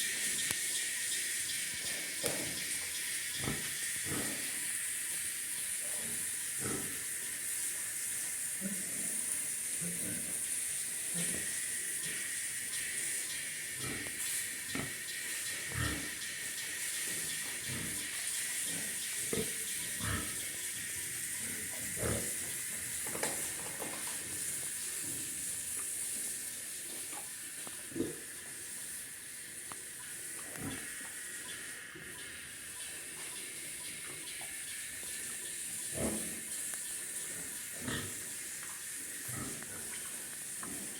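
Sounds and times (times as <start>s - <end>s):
steady high hiss: 0.0s - 40.9s
pigs grunting: 3.4s - 4.7s, 5.8s - 7.2s, 8.6s - 12.4s, 13.7s - 16.3s, 17.0s - 22.7s, 27.9s - 28.3s, 30.6s - 30.9s, 35.8s - 36.5s, 37.2s - 38.3s, 39.2s - 40.0s.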